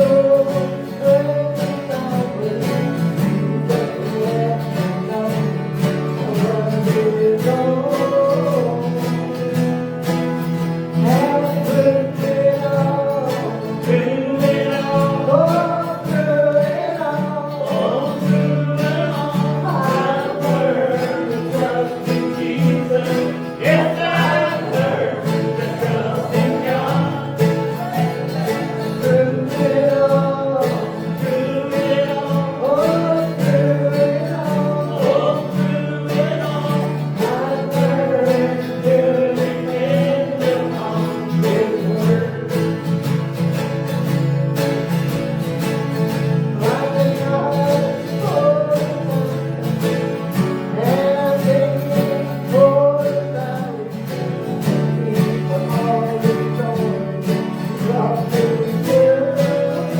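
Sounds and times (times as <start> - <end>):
person singing: 0.0 - 9.7, 11.0 - 42.8, 46.4 - 49.6, 50.5 - 59.9
strummed acoustic guitar: 0.0 - 59.9.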